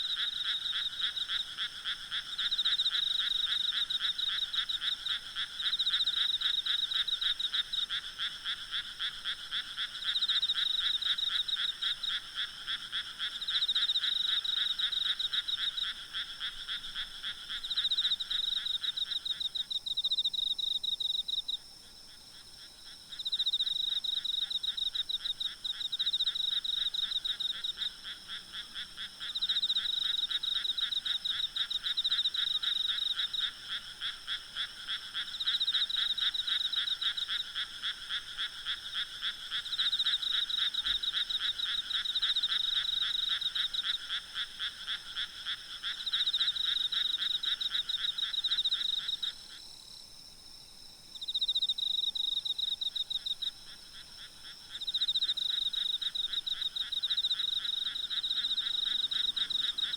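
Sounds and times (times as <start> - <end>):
frogs trilling: 0.0 - 21.6, 22.3 - 50.0, 51.1 - 59.9
insects droning: 0.0 - 59.9.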